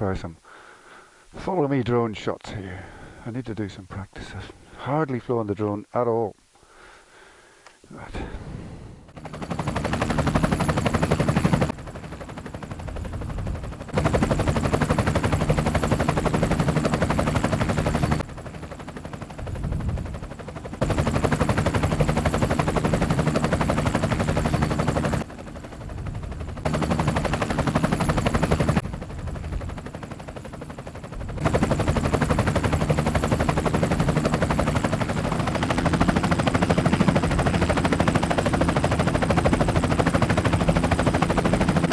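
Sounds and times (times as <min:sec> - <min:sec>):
wind rush on microphone: 0:12.7 - 0:18.5, 0:19.3 - 0:24.3, 0:25.8 - 0:27.5, 0:28.4 - 0:30.0.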